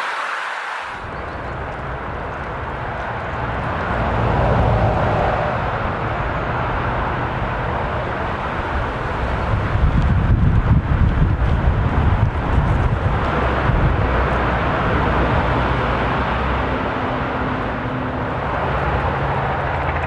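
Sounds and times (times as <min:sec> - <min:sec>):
jet engines rushing overhead: 0:00.0 - 0:20.0.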